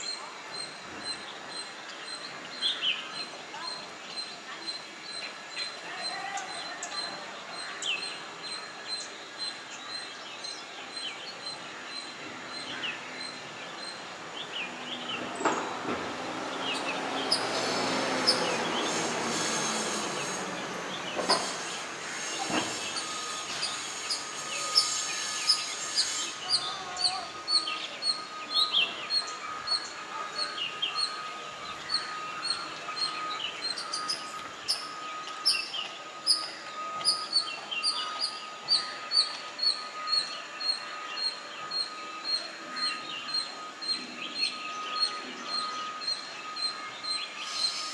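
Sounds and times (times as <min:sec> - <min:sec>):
birds chirping: 0:00.0 - 0:47.9
thin steady tone: 0:00.0 - 0:47.9
broad rushing noise: 0:12.4 - 0:34.7.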